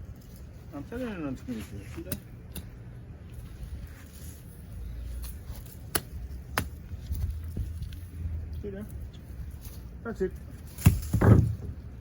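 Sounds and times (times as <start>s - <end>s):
tool chopping into tree stump: 10.8s - 11.7s.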